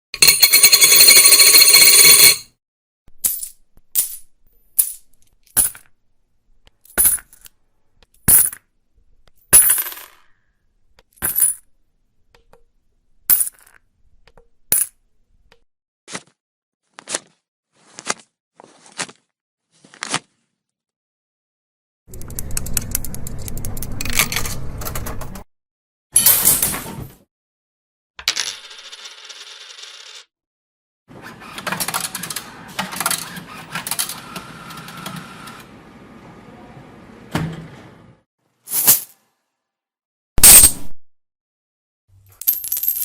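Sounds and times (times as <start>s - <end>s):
many coins jingling: 0.2s - 2.4s, 42.3s - 43.0s
coins dropping with a clink: 0.2s - 2.5s, 3.2s - 5.9s, 6.9s - 7.4s, 8.2s - 8.6s, 9.6s - 10.2s, 11.2s - 11.6s, 13.3s - 13.8s, 14.7s - 14.9s, 28.2s - 30.2s, 42.3s - 43.0s.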